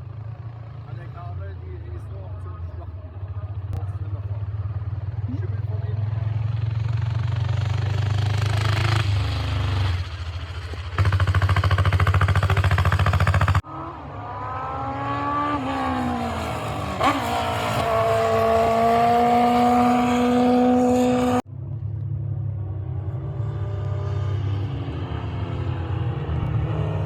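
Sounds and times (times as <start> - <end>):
racing engines accelerating: 13.6 - 21.9, 22.5 - 27.0.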